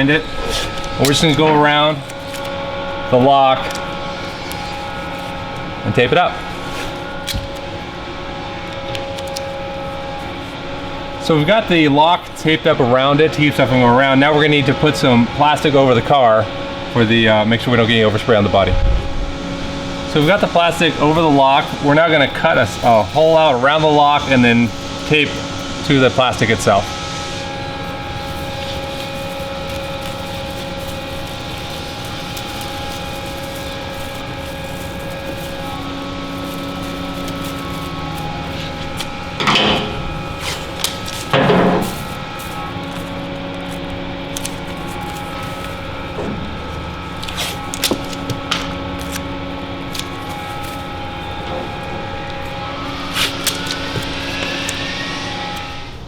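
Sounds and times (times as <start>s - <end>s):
steady hum: 0.0s - 56.0s
masking tape pulled off roll: 24.7s - 55.9s.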